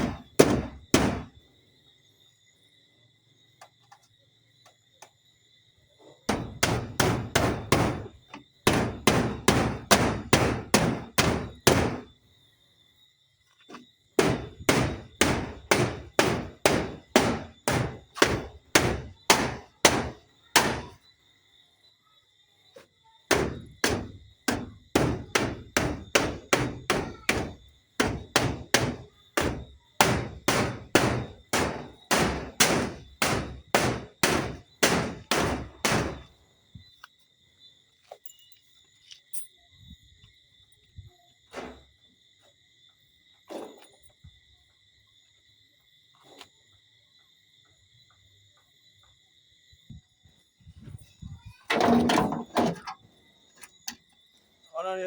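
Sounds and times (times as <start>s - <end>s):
hammer driving nails: 14.2s - 20.9s, 23.3s - 36.2s.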